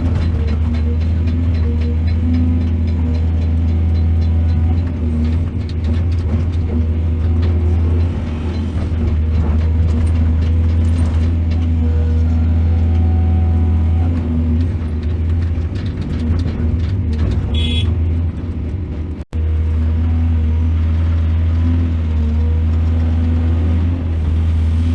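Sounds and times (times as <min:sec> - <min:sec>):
metal clanks and knocks: 0:00.0 - 0:13.1, 0:14.0 - 0:19.2
heavy diesel engine running: 0:00.0 - 0:24.9.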